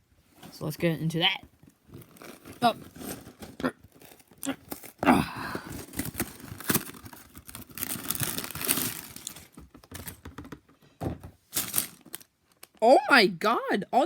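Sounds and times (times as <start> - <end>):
packaging tearing and crinkling: 1.8 - 10.2, 11.6 - 12.8.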